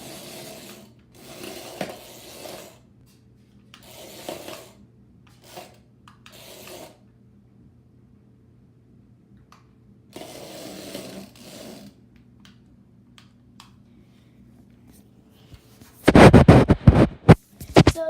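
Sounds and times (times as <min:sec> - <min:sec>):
toy motor hum: 0:00.0 - 0:02.8, 0:03.8 - 0:04.8, 0:05.4 - 0:07.0, 0:10.1 - 0:12.0
toy wheels rasping: 0:00.0 - 0:02.8, 0:03.8 - 0:04.8, 0:05.4 - 0:07.0, 0:10.2 - 0:12.0.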